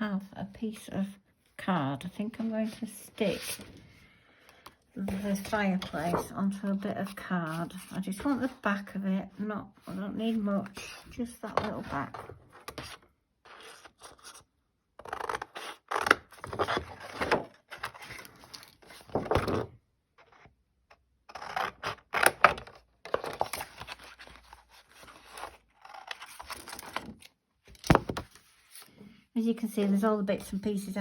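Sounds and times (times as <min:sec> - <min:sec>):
paper scraping and rustling: 0:05.1 - 0:06.4, 0:22.5 - 0:28.9.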